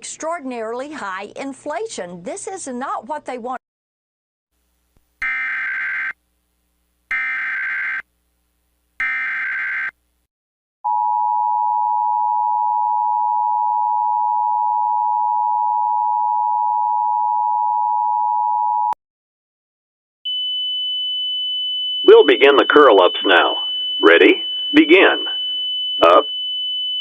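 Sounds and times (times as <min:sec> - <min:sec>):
two-tone alert signal: 0:26.0 - 0:26.3
warbling data tone bursts: 0:26.0 - 0:26.3.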